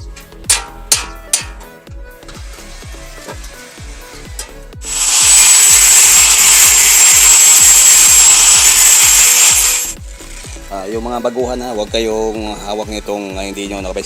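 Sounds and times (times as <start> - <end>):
angle grinder grinding sheet metal: 0.5 - 11.3.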